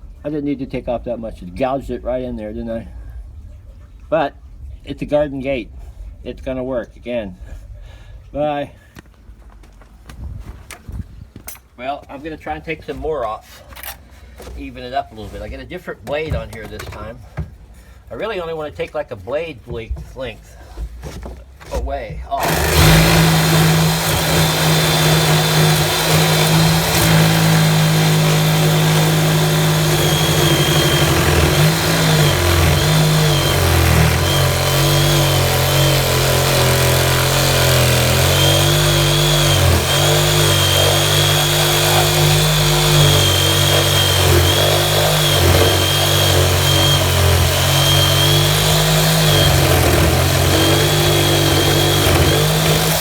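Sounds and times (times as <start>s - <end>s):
power tool cutting wood: 22.4s - 53.0s.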